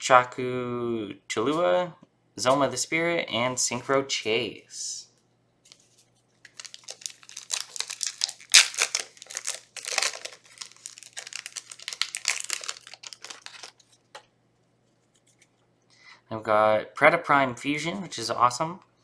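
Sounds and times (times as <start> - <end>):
foil wrapper crinkling and tearing: 5.7 - 13.9.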